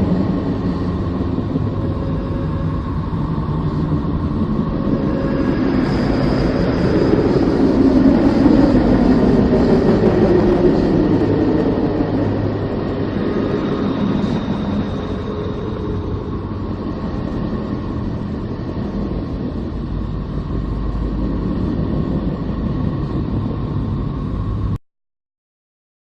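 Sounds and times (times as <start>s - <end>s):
rumbling space drone: 0.0s - 24.8s.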